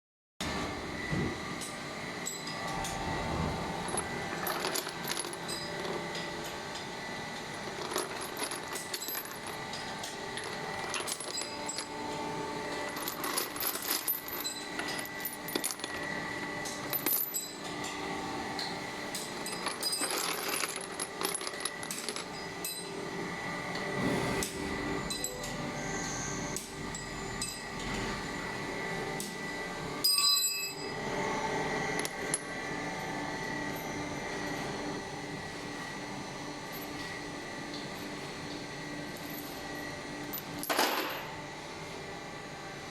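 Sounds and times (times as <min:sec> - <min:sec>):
steady machine tone: 0:01.8 - 0:40.4
metal parts clinking: 0:03.8 - 0:06.3, 0:07.7 - 0:12.0, 0:12.7 - 0:17.7, 0:19.2 - 0:22.9.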